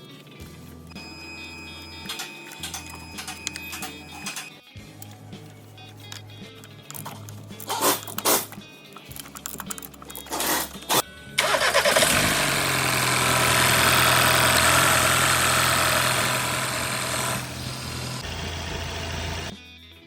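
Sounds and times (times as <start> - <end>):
van engine starting and running: 10.4 - 19.6.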